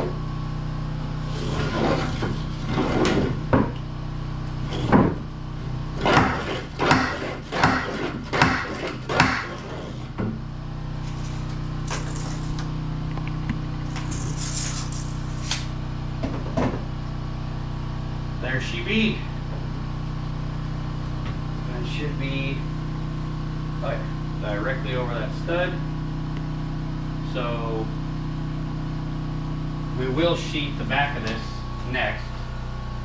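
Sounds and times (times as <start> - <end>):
steady low hum: 0.0 - 33.0
knocks and thuds on wood: 3.0 - 3.8, 6.0 - 9.6.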